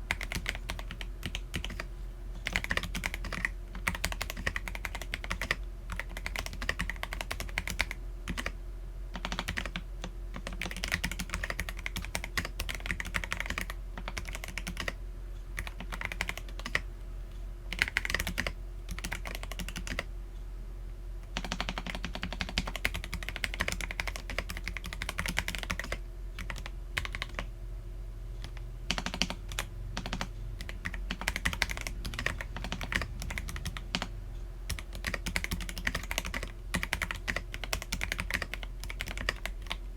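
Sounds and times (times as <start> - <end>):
typing on mechanical keyboard: 0.1 - 15.0, 15.6 - 16.8, 17.7 - 20.1, 21.3 - 27.5, 28.4 - 34.1, 34.7 - 39.8.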